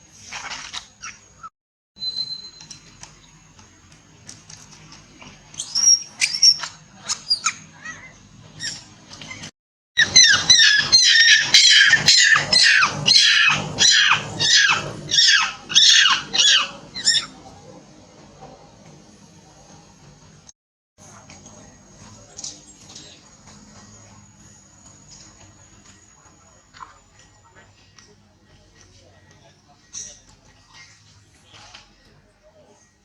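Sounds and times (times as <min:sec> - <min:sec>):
monkey screaming: 0:10.0 - 0:17.3.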